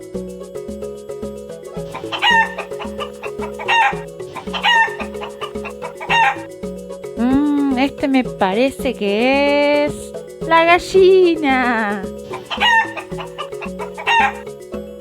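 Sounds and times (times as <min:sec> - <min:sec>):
background music with steady beat: 0:00.0 - 0:15.0
hen calling: 0:01.7 - 0:06.5, 0:10.5 - 0:14.5.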